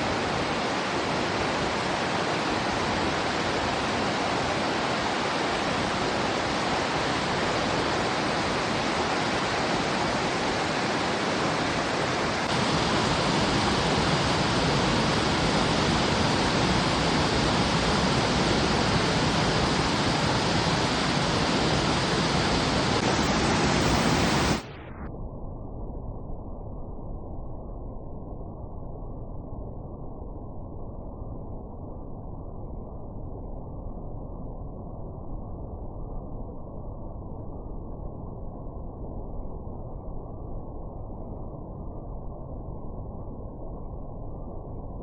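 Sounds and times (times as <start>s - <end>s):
river rushing over rocks: 0.1s - 24.6s.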